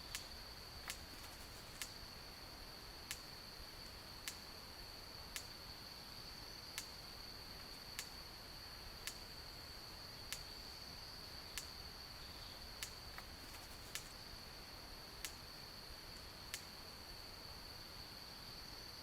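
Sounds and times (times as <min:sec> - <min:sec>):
high-pitched insect trill: 0:00.0 - 0:19.0
short sharp ticks: 0:12.8 - 0:14.1.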